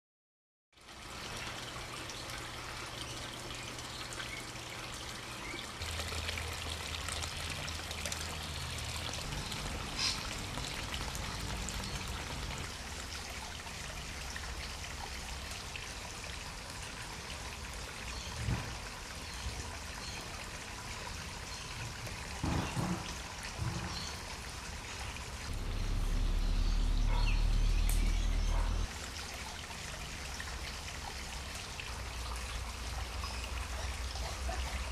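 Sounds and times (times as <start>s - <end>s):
water pouring over waterfall: 0.8s - 34.9s
low rumble: 25.5s - 28.9s.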